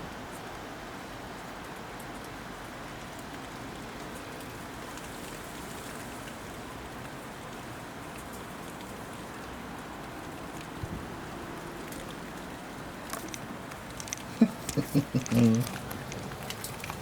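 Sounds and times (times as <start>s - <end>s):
hail pattering on surfaces: 3.4s - 17.0s.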